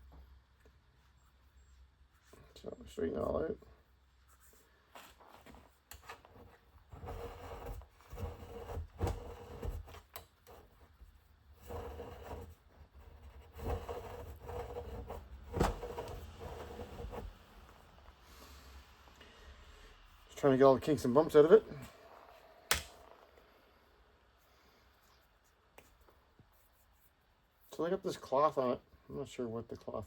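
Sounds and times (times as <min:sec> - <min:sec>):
wire rubbing and flexing: 0:06.0 - 0:18.0.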